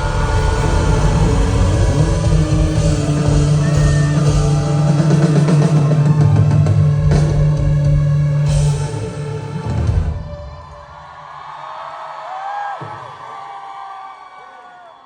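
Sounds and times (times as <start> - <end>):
bass guitar: 0.0 - 10.4
drum kit: 0.0 - 10.7
electric guitar: 0.0 - 10.7.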